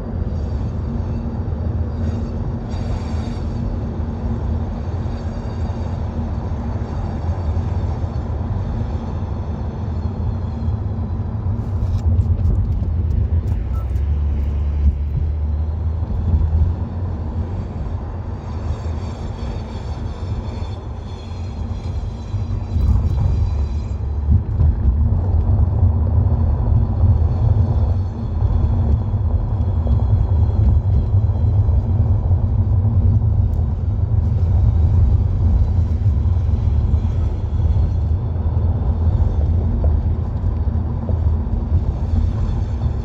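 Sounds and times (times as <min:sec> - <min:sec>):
low rumble from wheel bearing: 0:09.9 - 0:43.0
car driving: 0:10.1 - 0:43.0.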